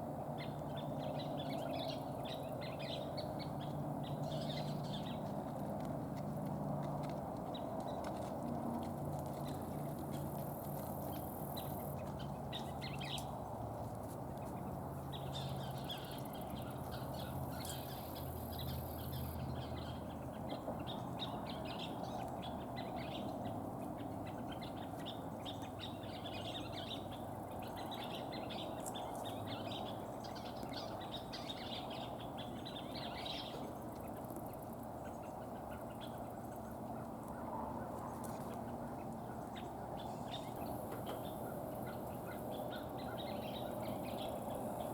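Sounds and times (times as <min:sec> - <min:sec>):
steady background hum: 0:00.0 - 0:44.9
birds chattering: 0:14.4 - 0:44.9.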